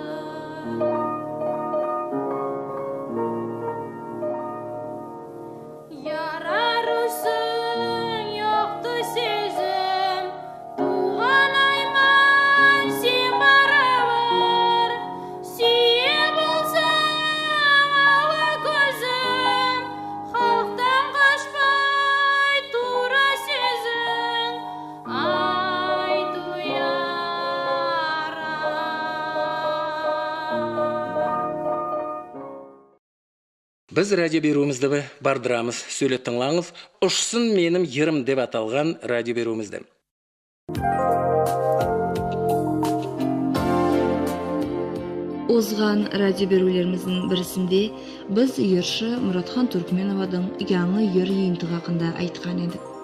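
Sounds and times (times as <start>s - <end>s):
woman singing: 0.0s - 1.2s, 5.9s - 31.4s, 45.5s - 52.9s
instrumental accompaniment: 0.0s - 22.6s, 40.7s - 53.0s.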